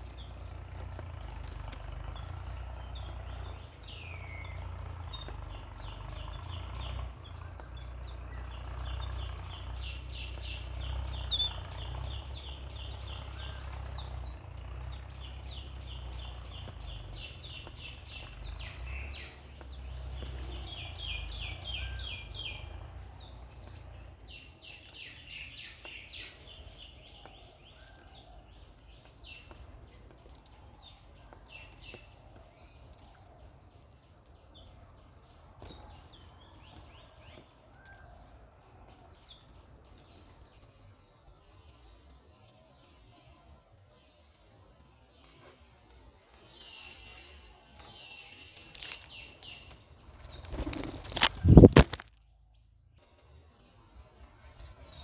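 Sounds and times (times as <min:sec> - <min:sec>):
high-pitched insect-like buzz: 0:43.9 - 0:52.1.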